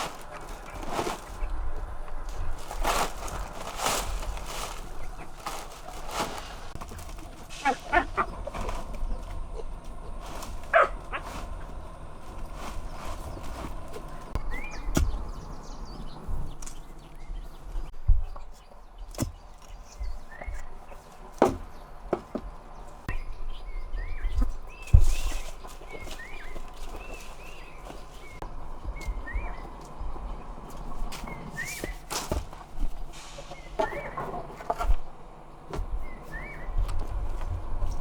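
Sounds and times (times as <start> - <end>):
footsteps: 0.0 - 15.1
small birds chirping: 0.0 - 38.0
knocks and thuds: 21.3 - 22.6.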